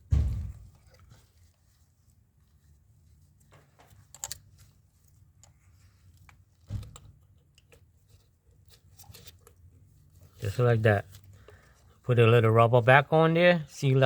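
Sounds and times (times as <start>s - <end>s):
loud knock: 0.1s - 0.6s.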